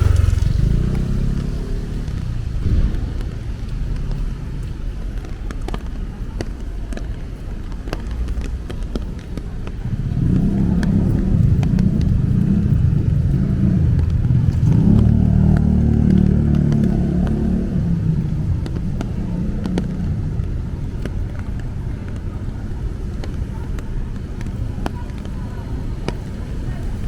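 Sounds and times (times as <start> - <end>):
vehicle passing by: 0.0 - 4.7, 9.8 - 20.7.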